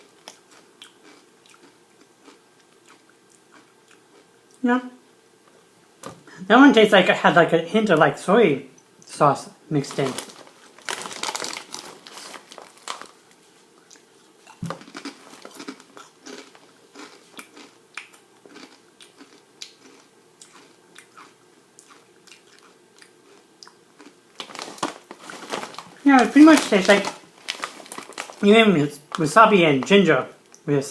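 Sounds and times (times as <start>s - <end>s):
person crunching potato chips: 0.0s - 4.3s, 9.8s - 29.9s.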